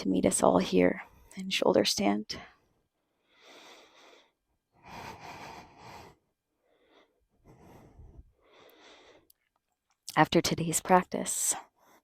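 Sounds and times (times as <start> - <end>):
person breathing: 2.5 - 9.3.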